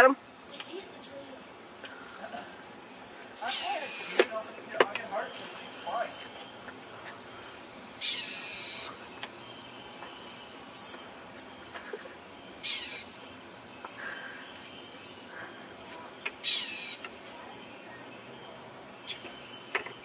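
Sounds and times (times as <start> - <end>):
bird harsh squawks: 3.4 - 4.3, 8.0 - 9.0, 12.6 - 13.2, 15.0 - 15.4, 16.4 - 17.0
short high bird chirp: 10.8 - 11.2.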